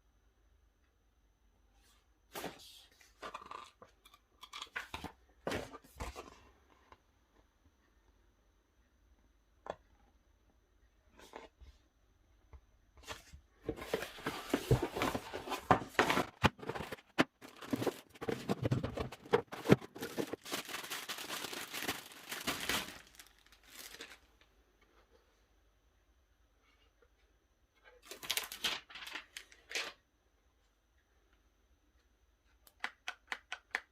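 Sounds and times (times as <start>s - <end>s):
packing material crinkling and tearing: 14.7s - 24.3s, 28.0s - 29.5s.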